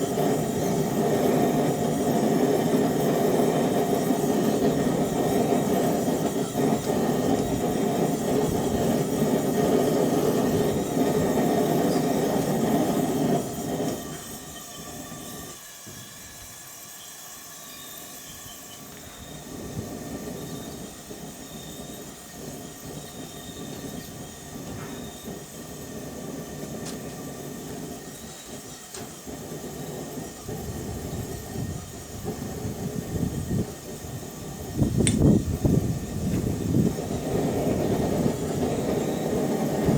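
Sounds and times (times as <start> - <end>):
gas burner roaring: 0.0 - 39.9.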